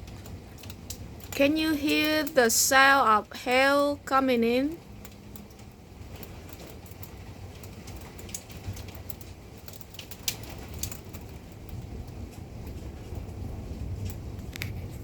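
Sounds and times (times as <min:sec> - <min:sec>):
hailstones ticking on hard surfaces: 0:00.0 - 0:15.0
rain: 0:00.0 - 0:15.0
wind: 0:03.2 - 0:15.0.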